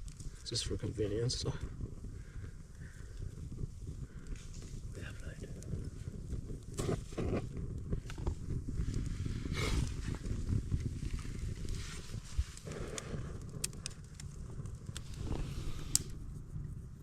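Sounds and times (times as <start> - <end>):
wind on microphone: 0.0 - 17.0.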